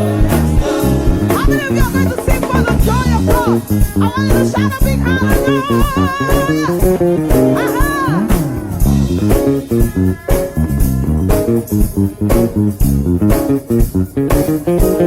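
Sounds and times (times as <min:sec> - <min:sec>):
drum hits: 0:00.0 - 0:15.0
gospel praise band playing: 0:00.0 - 0:15.0
wavering voice: 0:01.4 - 0:08.9, 0:09.6 - 0:11.3.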